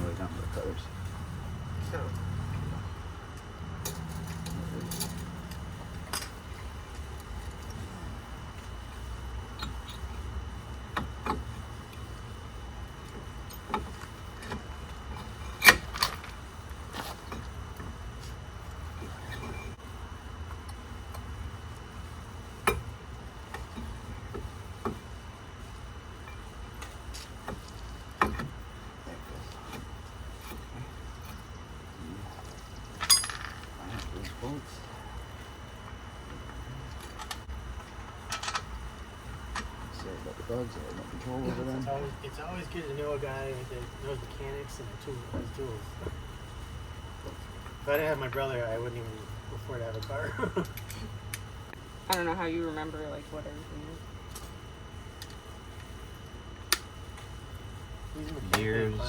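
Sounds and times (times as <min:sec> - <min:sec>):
low steady hum: 0:00.0 - 0:59.0
metal tools clicking and clinking: 0:03.8 - 0:06.4, 0:33.0 - 0:34.1.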